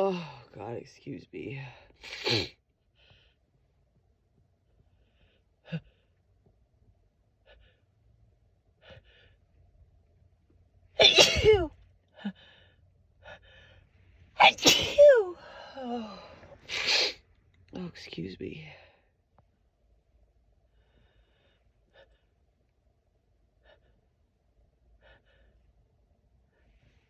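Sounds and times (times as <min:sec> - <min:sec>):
woman sneezing: 0:02.0 - 0:02.6, 0:11.0 - 0:11.7, 0:14.4 - 0:15.4, 0:16.7 - 0:17.2
faint breaths: 0:02.9 - 0:03.6, 0:04.7 - 0:06.2, 0:07.4 - 0:08.0, 0:08.8 - 0:09.7, 0:12.1 - 0:14.4, 0:20.6 - 0:22.5.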